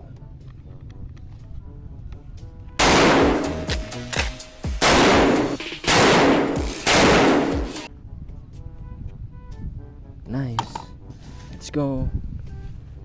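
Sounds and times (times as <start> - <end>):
background music: 0.0 - 13.0
loud gunshot-like blasts: 2.8 - 4.0, 4.8 - 7.9.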